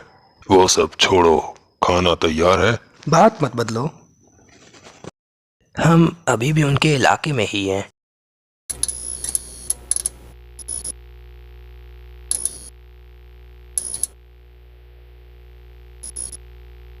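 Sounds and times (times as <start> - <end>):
bright ticking bursts: 8.7 - 11.0, 12.2 - 12.8
electronic drone of held tones: 8.7 - 17.0.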